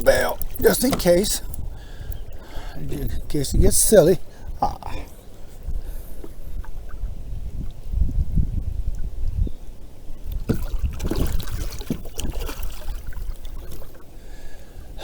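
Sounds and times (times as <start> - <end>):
low rumble on microphone: 1.4 - 14.0
water splashing around kayak: 10.3 - 14.4.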